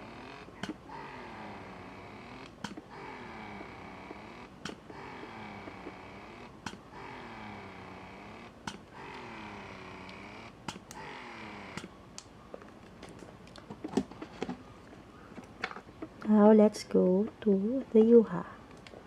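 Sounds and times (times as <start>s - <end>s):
pump motor hum: 0.0s - 12.0s
breast pump clicks: 0.2s - 12.3s.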